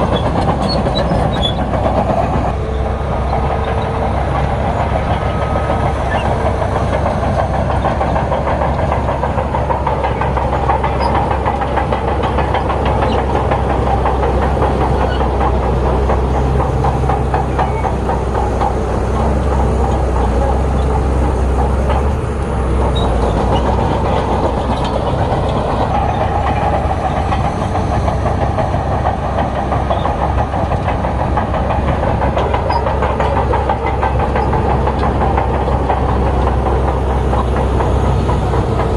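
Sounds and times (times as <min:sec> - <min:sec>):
bulldozer diesel engine running: 0:00.0 - 0:38.9
steel tracks clattering: 0:00.0 - 0:38.9.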